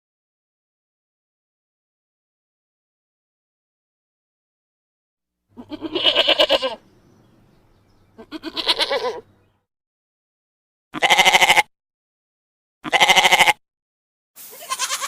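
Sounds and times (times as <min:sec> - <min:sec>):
goat bleating: 0:05.5 - 0:06.9, 0:08.0 - 0:09.4, 0:11.0 - 0:11.7, 0:12.8 - 0:13.6, 0:14.4 - 0:15.0.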